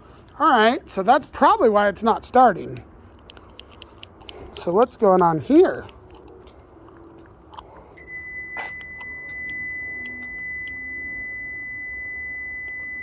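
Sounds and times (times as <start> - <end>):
high electronic warning buzzer: 8.0 - 13.0.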